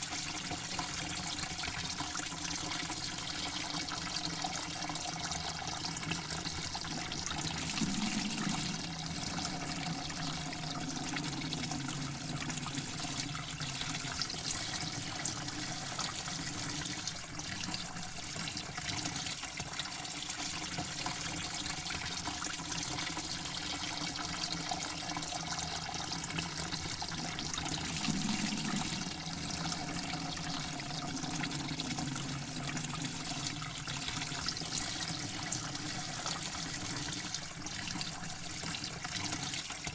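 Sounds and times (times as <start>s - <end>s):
running water: 6.3s - 17.6s, 24.4s - 39.9s.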